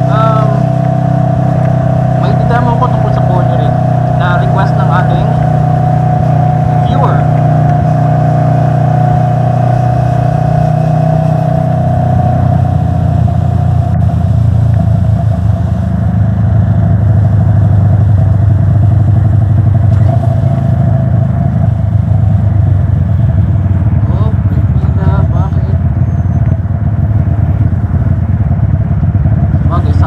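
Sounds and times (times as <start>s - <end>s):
motorcycle engine drone: 0.0s - 30.0s.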